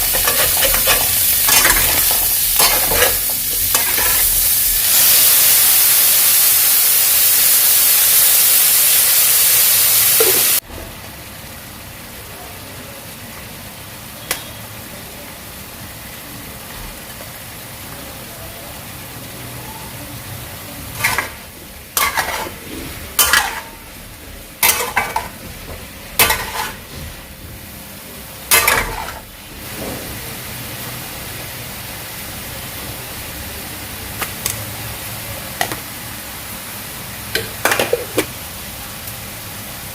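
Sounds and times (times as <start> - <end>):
utensils clinking on cookware: 0.0 - 4.4, 21.0 - 22.6, 23.2 - 23.8, 24.6 - 25.4, 26.2 - 26.9, 28.5 - 29.3, 37.4 - 38.3
noodles sizzling in a hot pan: 0.0 - 39.9.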